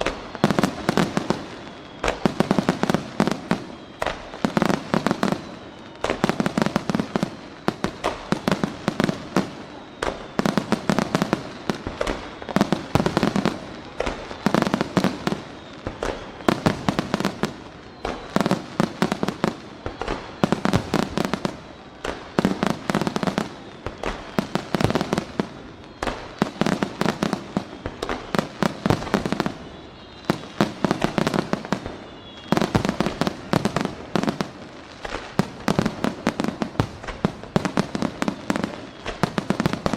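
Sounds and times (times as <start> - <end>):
faint firework whistles: 0.0 - 39.9
firework bursts and crackling: 0.0 - 39.9.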